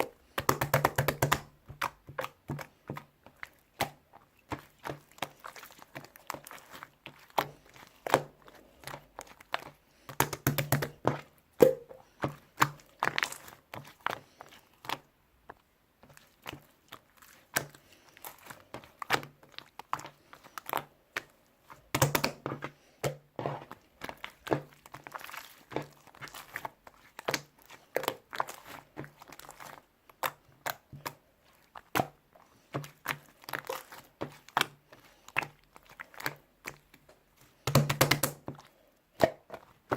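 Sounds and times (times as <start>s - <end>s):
slime clicking and popping: 0.3s - 2.4s, 10.1s - 11.0s, 21.9s - 22.4s, 37.6s - 38.4s.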